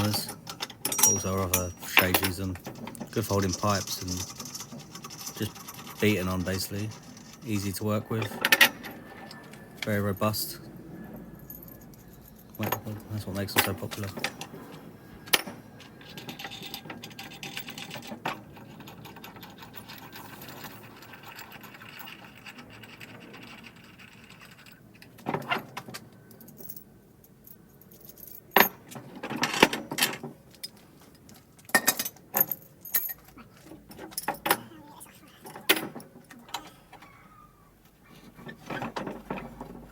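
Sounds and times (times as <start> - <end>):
metallic clinking and rattling: 0.0 - 37.2, 37.9 - 39.9.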